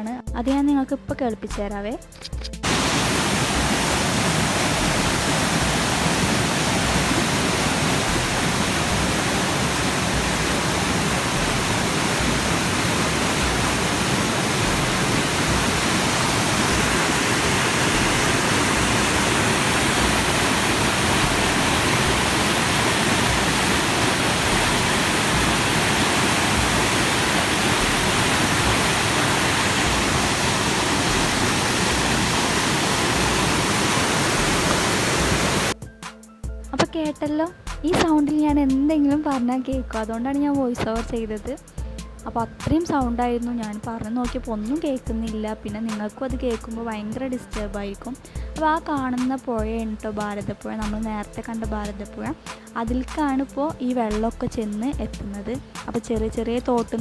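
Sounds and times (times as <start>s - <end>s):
waterfall rushing: 2.6s - 35.8s.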